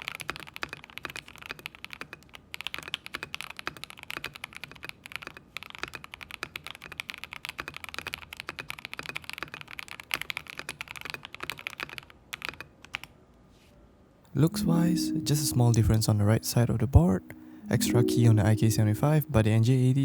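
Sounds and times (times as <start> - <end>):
mechanical keyboard typing: 0.0 - 13.1.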